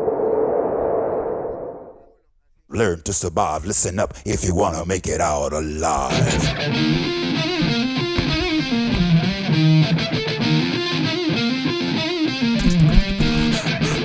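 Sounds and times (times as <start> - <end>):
distorted electric guitar: 6.0 - 14.0.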